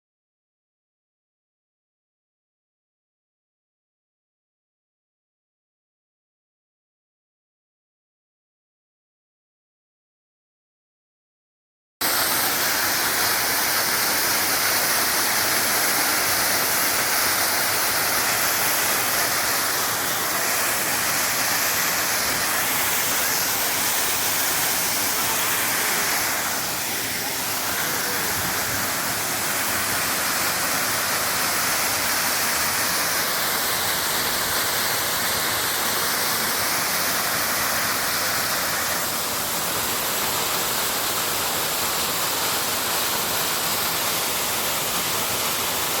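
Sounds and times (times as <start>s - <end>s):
waterfall rushing: 12.0s - 46.0s.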